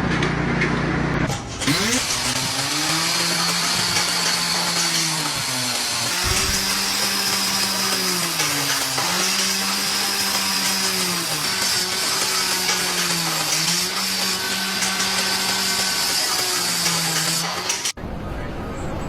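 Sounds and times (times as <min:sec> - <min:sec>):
machine motor humming: 0:01.6 - 0:13.4
low thump: 0:06.1 - 0:06.9.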